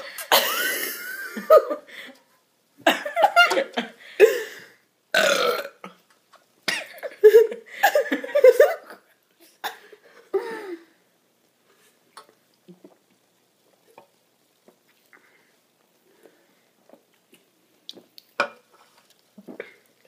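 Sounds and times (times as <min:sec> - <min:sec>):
burp: 0:05.1 - 0:06.0.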